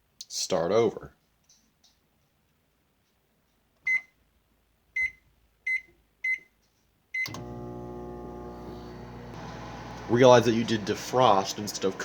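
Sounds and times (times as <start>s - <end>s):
microwave click: 7.3s - 12.0s
microwave humming: 7.3s - 12.0s.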